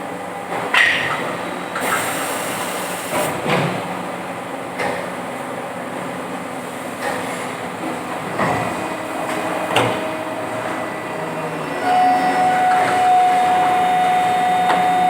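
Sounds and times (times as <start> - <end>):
injection moulding machine hum: 6.5 - 15.0
machine clunks: 8.4 - 10.9, 11.9 - 15.0.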